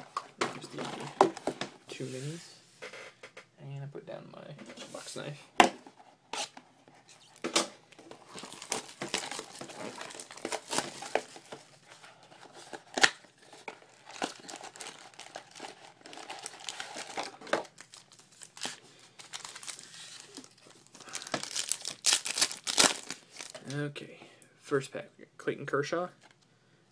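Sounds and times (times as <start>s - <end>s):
plastic wrappers crinkling and tearing: 7.1s - 23.8s.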